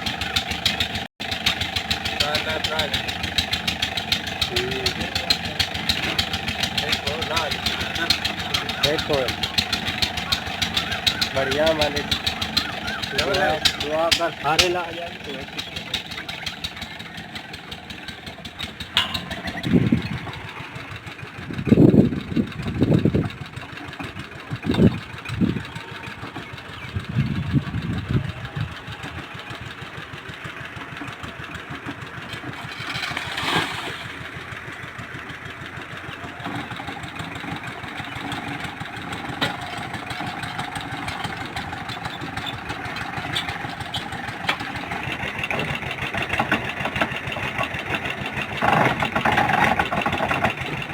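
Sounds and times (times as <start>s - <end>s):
engine running: 0.0s - 50.9s
fast ticking: 0.4s - 23.6s.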